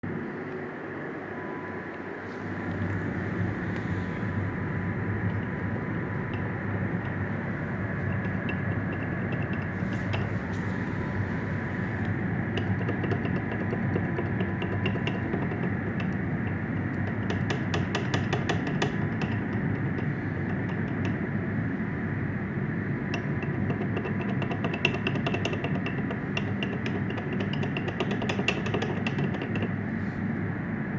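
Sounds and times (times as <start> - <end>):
electric quad drive hum: 0.0 - 30.9
rapid clicking rattle from wheel hub: 3.4 - 30.1.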